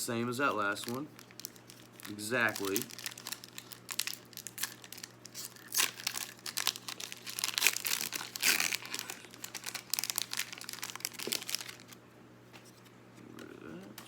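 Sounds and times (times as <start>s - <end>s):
foil wrapper crinkling and tearing: 0.5s - 12.0s.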